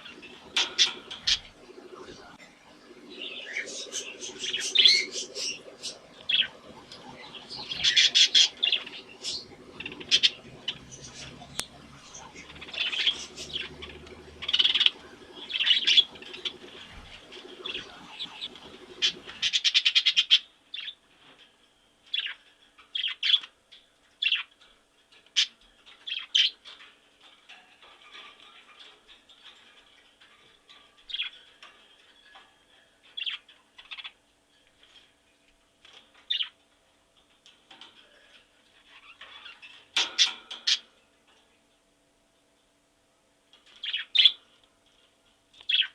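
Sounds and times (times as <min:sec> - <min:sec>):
budgerigars chirping and warbling: 0:00.0 - 0:21.0, 0:38.8 - 0:40.9, 0:43.7 - 0:44.4.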